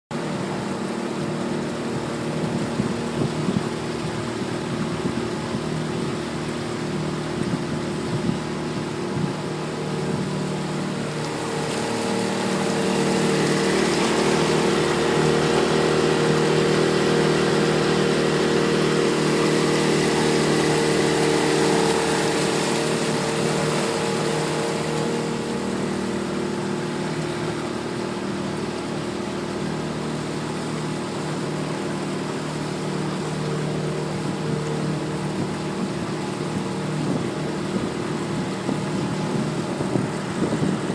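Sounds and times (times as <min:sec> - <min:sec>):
outboard motor running: 0:00.1 - 0:40.9
water rush: 0:00.1 - 0:40.9
wind rush: 0:01.9 - 0:26.2, 0:35.2 - 0:40.9.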